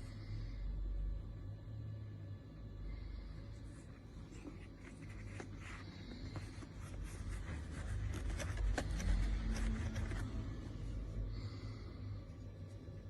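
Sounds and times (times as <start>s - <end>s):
steady low hum: 0.0s - 13.0s
light scratching and rubbing: 3.6s - 10.9s.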